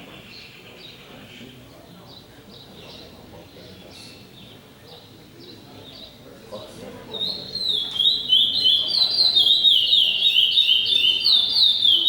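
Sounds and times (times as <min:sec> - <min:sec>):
songbird singing whistled notes: 0:07.1 - 0:12.0.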